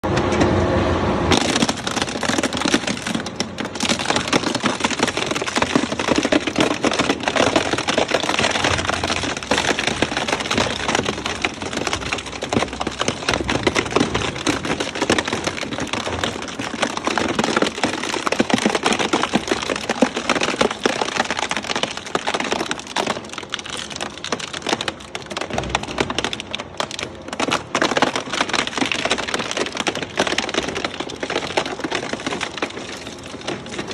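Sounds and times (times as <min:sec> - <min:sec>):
shredding machine crackling: 0:00.0 - 0:33.9.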